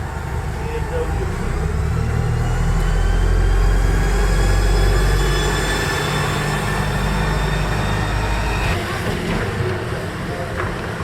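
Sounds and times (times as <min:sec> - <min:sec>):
train low rumble: 0:00.0 - 0:11.0
electric motor whine rising: 0:01.3 - 0:08.9.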